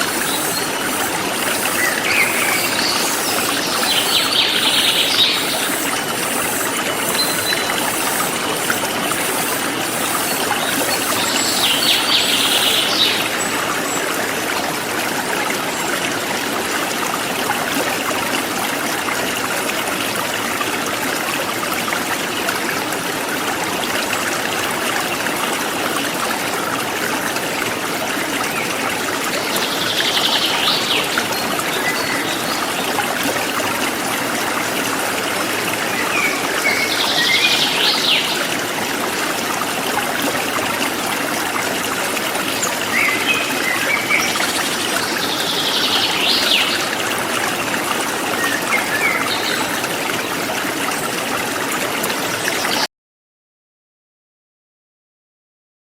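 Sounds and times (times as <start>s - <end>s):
stream flowing and trickling: 0.0s - 52.9s.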